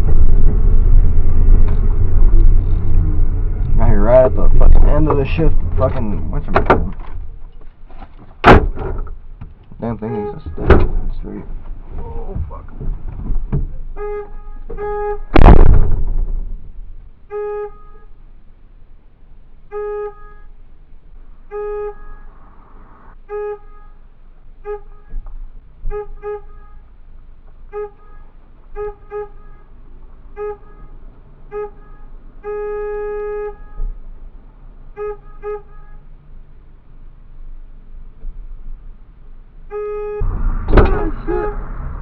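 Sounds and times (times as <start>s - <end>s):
loud brief thump: 8.4s - 9.1s, 10.6s - 11.0s, 15.3s - 16.7s, 40.2s - 41.2s
car horn honking: 9.8s - 11.0s, 13.8s - 15.7s, 17.3s - 18.2s, 19.6s - 20.6s, 21.4s - 22.5s, 23.2s - 25.2s, 25.8s - 27.0s, 27.7s - 34.0s, 34.9s - 36.2s, 39.7s - 41.9s.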